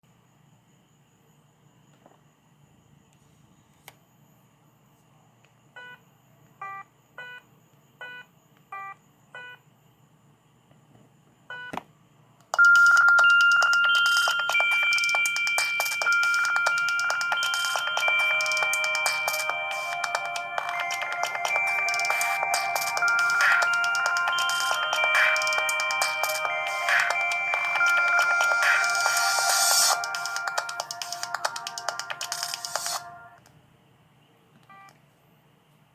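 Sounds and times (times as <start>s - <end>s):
electronic ringtone melody: 12.6s - 33.4s
phone key beeps: 34.6s - 35.0s.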